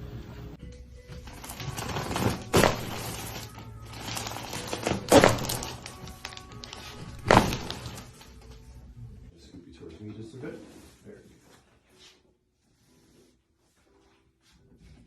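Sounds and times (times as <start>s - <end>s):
rustling: 1.2s - 8.7s.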